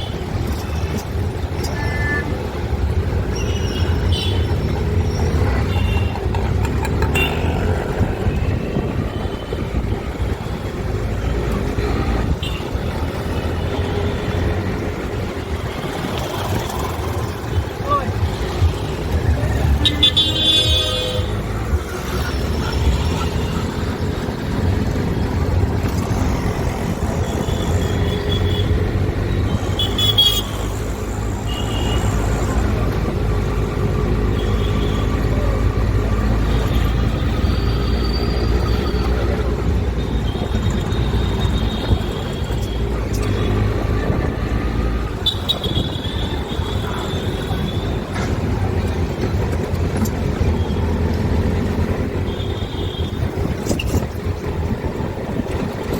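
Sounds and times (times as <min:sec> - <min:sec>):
traffic engines rumbling: 0:00.0 - 0:55.9
people's voices: 0:15.8 - 0:20.1.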